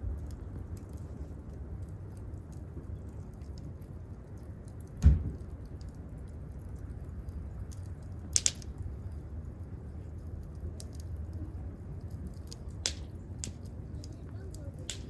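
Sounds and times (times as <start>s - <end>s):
campfire wood crackling: 0.0s - 15.0s
low steady rumble: 0.0s - 15.0s
loud fire pops: 4.7s - 6.4s, 7.6s - 8.8s, 12.3s - 15.0s.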